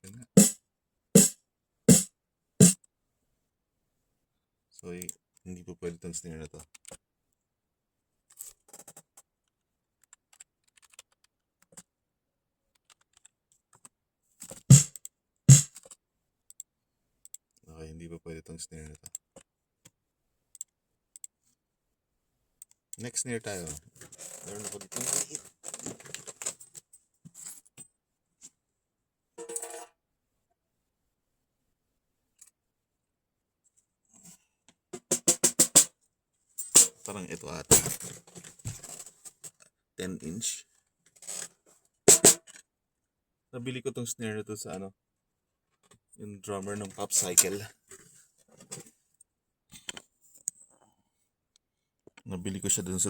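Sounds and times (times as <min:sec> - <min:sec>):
snare drum cracks: 0:01.2 - 0:02.8, 0:14.7 - 0:14.9, 0:42.1 - 0:42.4
snare drum hardware clicking: 0:01.9 - 0:02.8, 0:14.7 - 0:15.7.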